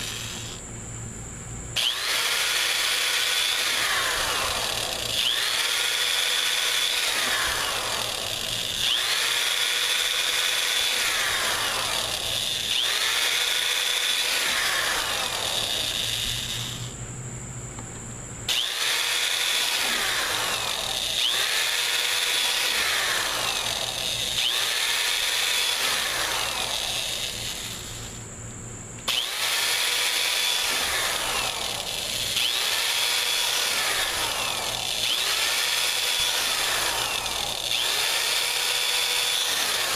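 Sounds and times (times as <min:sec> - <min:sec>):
electric drill whining: 0:00.0 - 0:00.7, 0:01.8 - 0:17.0, 0:18.5 - 0:28.2, 0:29.1 - 0:39.9.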